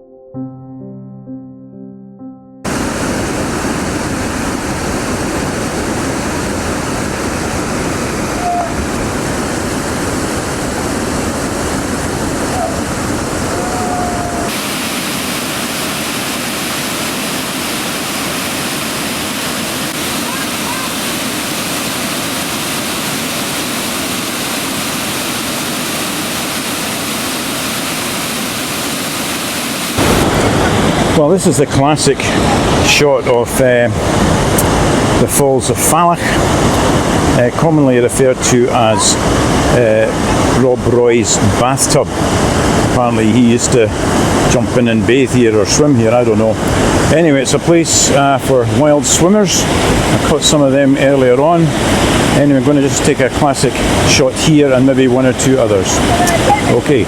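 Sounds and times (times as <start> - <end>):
soft ambient music: 0.0 - 2.7
waterfall roaring: 2.7 - 57.0.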